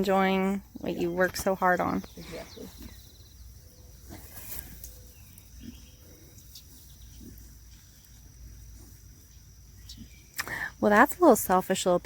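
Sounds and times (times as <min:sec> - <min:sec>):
pigs grunting: 0:05.5 - 0:08.0.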